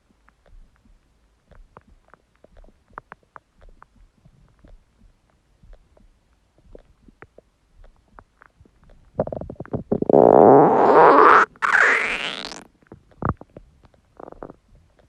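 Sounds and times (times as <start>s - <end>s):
stomach growling and gurgling: 0.4s - 15.0s.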